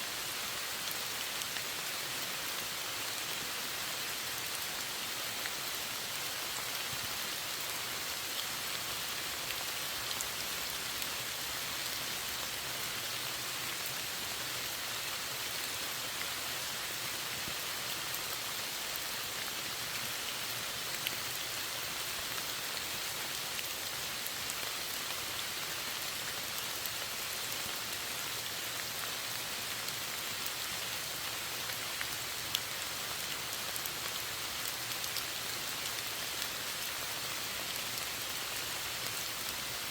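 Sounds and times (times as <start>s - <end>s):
steady rainfall hiss: 0.0s - 39.9s.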